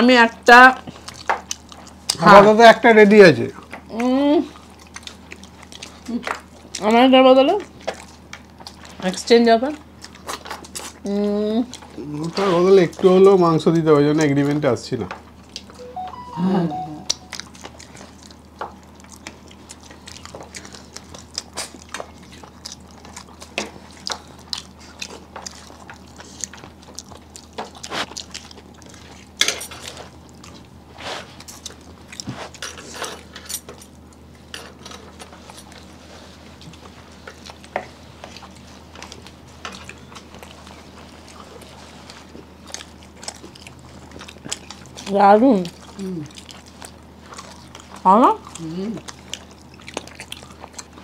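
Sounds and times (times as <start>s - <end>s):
people chewing and smacking: 0.0s - 51.0s
low steady hum: 15.5s - 51.0s.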